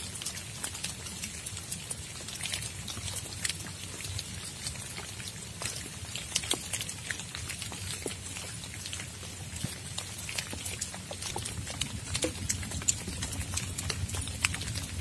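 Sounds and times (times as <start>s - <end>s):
drops ticking on a surface: 0.0s - 15.0s
steady rain: 0.0s - 15.0s.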